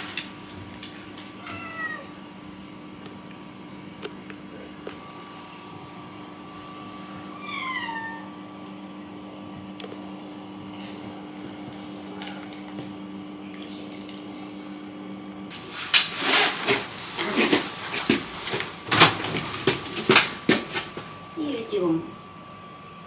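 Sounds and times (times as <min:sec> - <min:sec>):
cat meowing: 0:01.4 - 0:02.2, 0:07.3 - 0:08.3.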